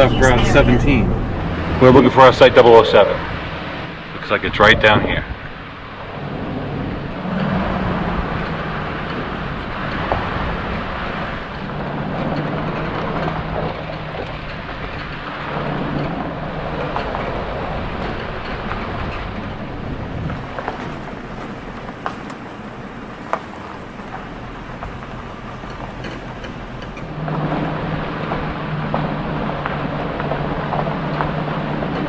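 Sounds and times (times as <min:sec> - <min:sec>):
engine and tyre rumble: 0:00.0 - 0:32.0
low hum: 0:00.0 - 0:32.0
small clicks and knocks: 0:24.1 - 0:27.4.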